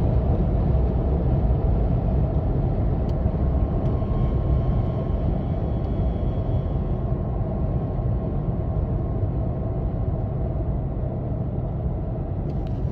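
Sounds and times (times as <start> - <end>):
low road rumble: 12.3 - 12.9.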